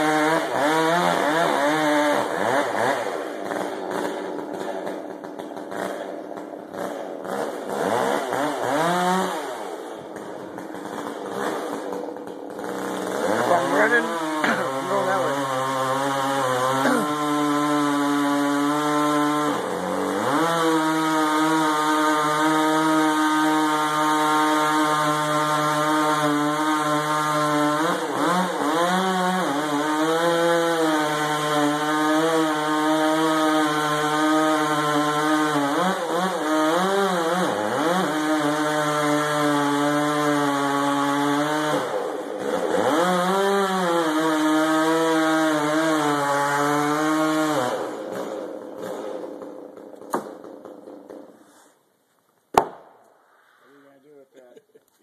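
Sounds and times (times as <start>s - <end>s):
chainsaw cutting timber: 0.0s - 51.8s, 52.5s - 54.0s.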